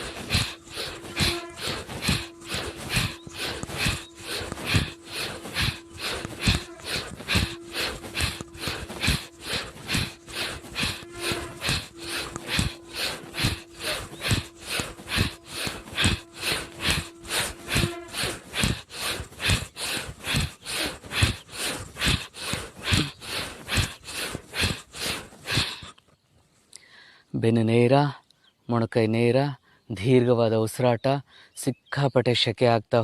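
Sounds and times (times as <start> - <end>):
forceful rapid nasal breathing: 0.0 - 26.0.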